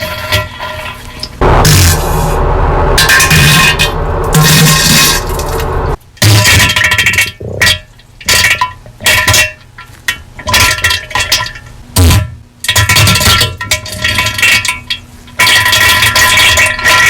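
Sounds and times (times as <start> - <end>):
distorted diarrhea sound effect: 1.4 - 6.0.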